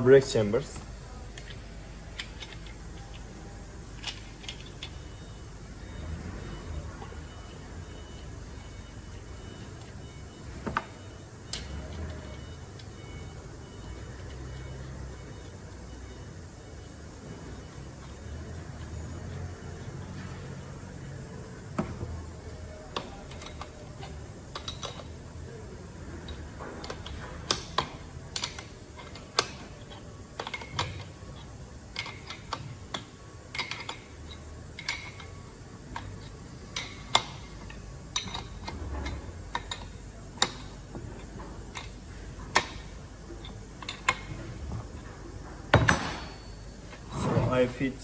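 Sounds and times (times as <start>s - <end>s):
metal tools clicking and clinking: 1.4s - 5.1s, 22.9s - 25.2s, 26.2s - 47.4s.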